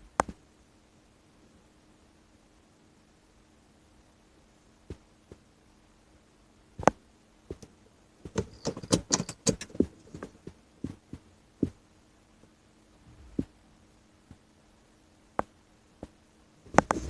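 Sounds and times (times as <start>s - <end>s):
light clicks and knocks: 6.8s - 11.8s
rattling clicks: 8.3s - 10.4s.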